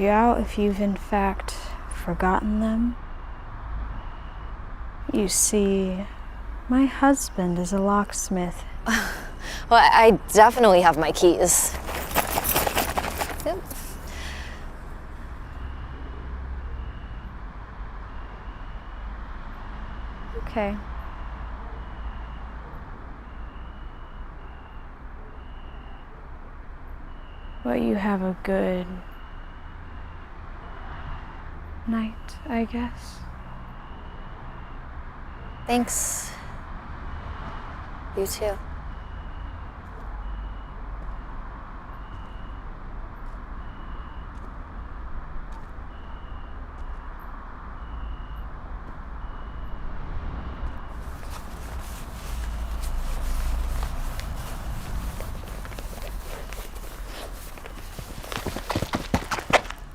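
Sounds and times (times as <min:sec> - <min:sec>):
footsteps: 0:10.3 - 0:14.6, 0:51.0 - 0:59.9.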